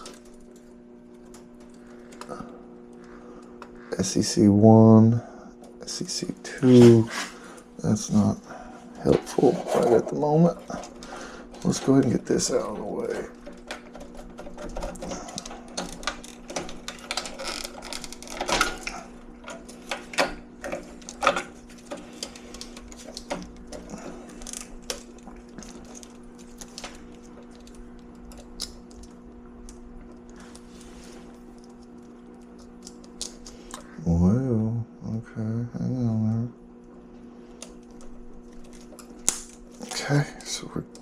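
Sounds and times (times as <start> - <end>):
hands handling wires and parts: 9.0 - 33.9, 37.6 - 41.0.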